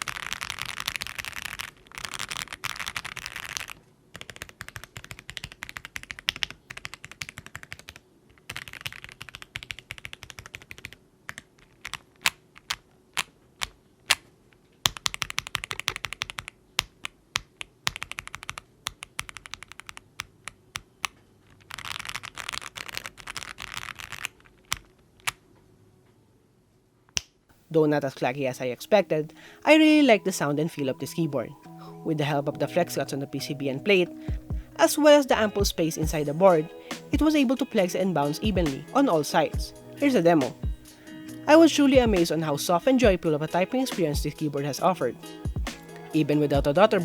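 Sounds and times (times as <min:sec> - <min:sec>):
mechanical keyboard typing: 0:00.0 - 0:14.2, 0:14.8 - 0:25.4.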